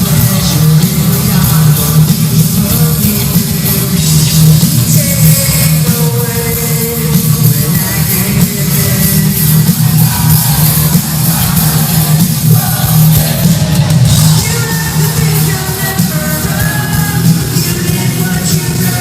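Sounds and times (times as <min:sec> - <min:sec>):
heavy bass: 0:00.0 - 0:19.0
live rock band: 0:00.0 - 0:19.0
person singing: 0:00.0 - 0:19.0.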